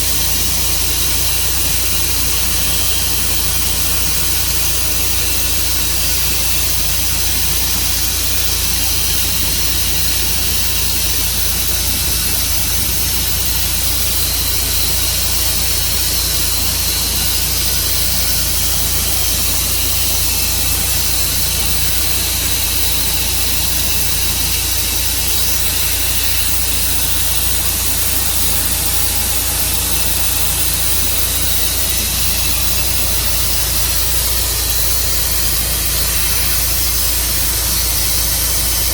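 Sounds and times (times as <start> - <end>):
saw hissing through log: 0.0 - 38.9
sawmill engine drone: 0.0 - 38.9.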